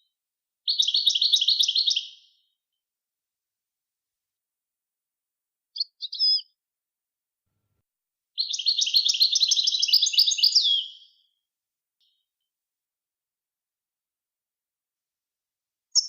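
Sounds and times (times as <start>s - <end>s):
songbird twittering phrase: 0.7s - 2.4s, 5.8s - 6.6s, 8.4s - 11.4s
songbird call notes: 5.8s - 6.6s, 8.4s - 11.3s.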